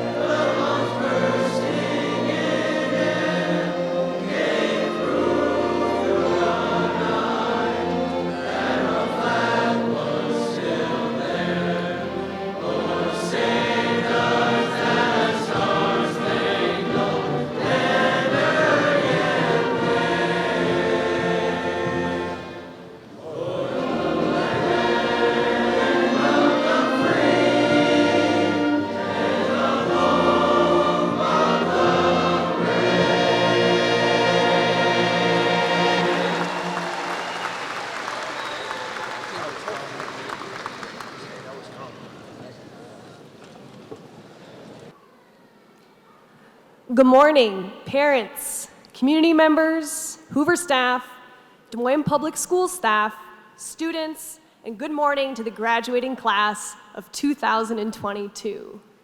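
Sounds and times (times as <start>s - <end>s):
choir singing: 0.0s - 40.3s.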